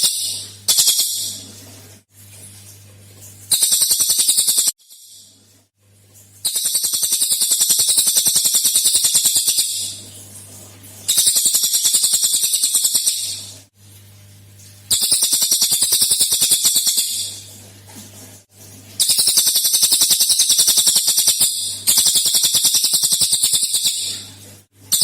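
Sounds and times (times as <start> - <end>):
bird singing rapid high notes: 3.5 - 5.3, 6.4 - 10.0, 11.1 - 13.5, 14.9 - 17.4, 19.0 - 24.3.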